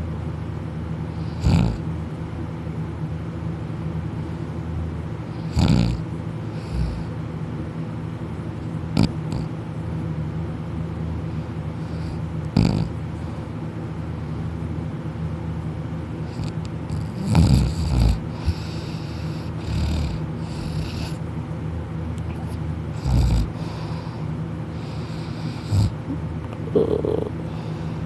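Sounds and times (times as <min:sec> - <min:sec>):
steady low hum: 0:00.0 - 0:28.0
person snoring loudly: 0:01.3 - 0:01.8, 0:05.5 - 0:06.0, 0:16.3 - 0:21.2, 0:23.0 - 0:23.8, 0:26.7 - 0:27.6.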